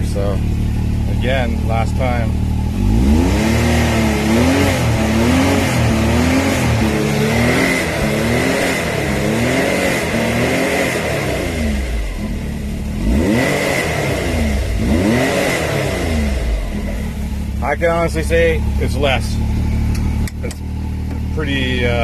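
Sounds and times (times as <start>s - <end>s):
engine revving: 0.0s - 22.0s
clutch rattle: 19.4s - 21.6s.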